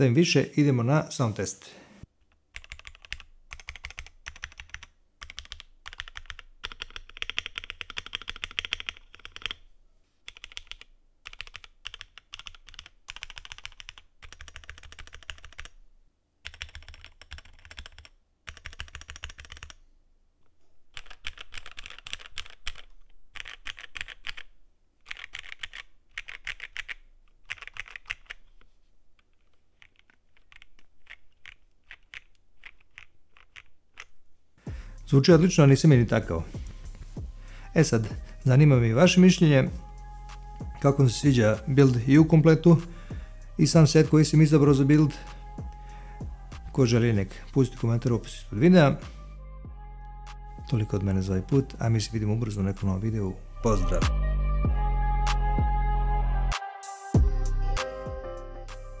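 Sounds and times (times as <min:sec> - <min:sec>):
typing on mechanical keyboard: 0:02.5 - 0:09.6, 0:10.3 - 0:15.8, 0:16.4 - 0:19.8, 0:20.9 - 0:28.5, 0:29.3 - 0:34.1.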